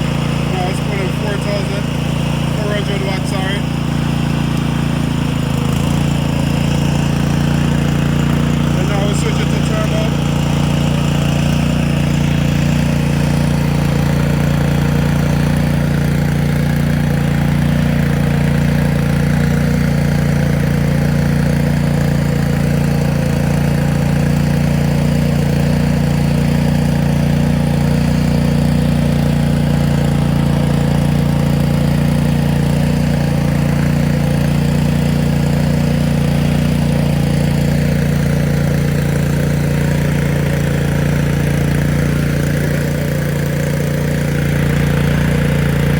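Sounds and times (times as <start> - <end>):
generator engine humming: 0.0 - 45.9.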